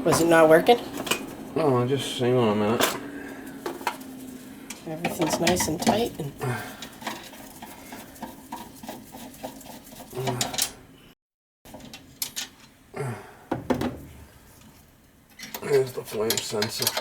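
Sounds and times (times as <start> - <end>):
hand tools clicking and tapping: 0.1 - 1.5, 2.8 - 10.8, 15.3 - 17.0
small metal parts rattling: 2.8 - 8.7, 10.1 - 10.8, 15.3 - 17.0.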